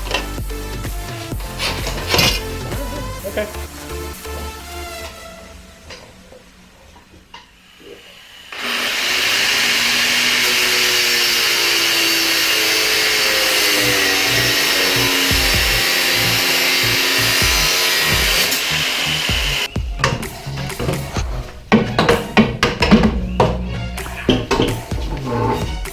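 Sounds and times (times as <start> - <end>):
background music: 0.0 - 6.7, 13.4 - 25.9
power tool hissing: 4.9 - 23.0.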